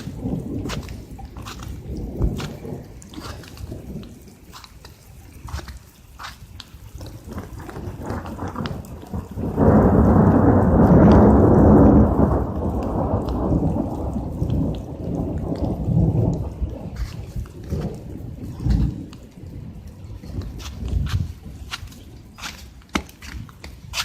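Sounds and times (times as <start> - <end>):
deep thunder rumble: 0.0 - 5.7, 7.0 - 24.0
hail ticking: 0.0 - 24.0.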